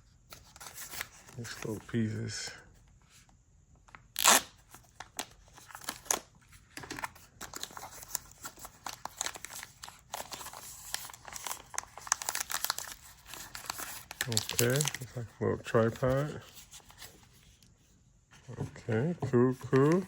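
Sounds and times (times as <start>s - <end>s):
wrapping crinkling and rustling: 0.3s - 2.1s, 3.9s - 17.7s, 18.8s - 20.0s
packaging tearing: 4.1s - 6.3s, 7.0s - 15.3s.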